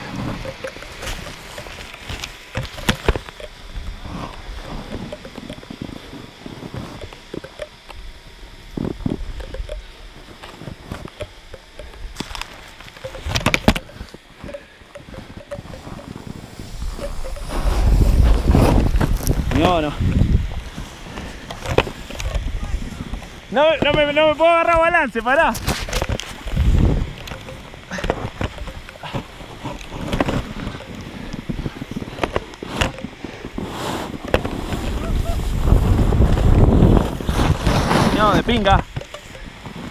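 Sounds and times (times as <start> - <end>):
wind buffeting microphone: 0.0 - 24.4, 25.0 - 39.9
footsteps crunching through snow: 15.3 - 24.5.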